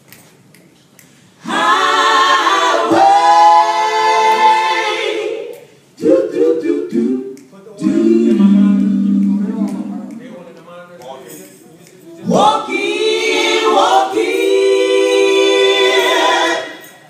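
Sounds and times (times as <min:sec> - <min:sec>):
choir singing a cappella: 0:01.4 - 0:10.3, 0:12.2 - 0:17.0.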